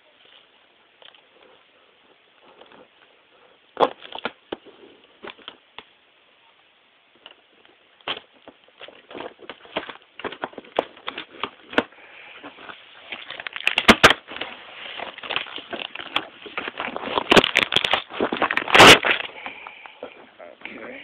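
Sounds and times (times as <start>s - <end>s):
packaging being torn open: 13.1s - 19.4s.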